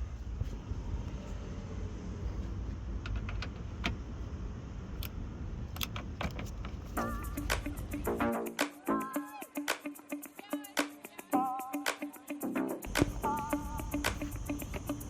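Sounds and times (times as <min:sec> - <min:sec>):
sharp clicks and taps: 0:07.4 - 0:08.7.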